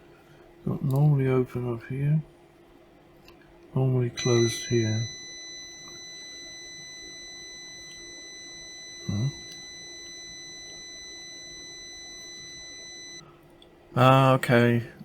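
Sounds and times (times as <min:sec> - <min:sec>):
high continuity beep: 0:04.2 - 0:13.2.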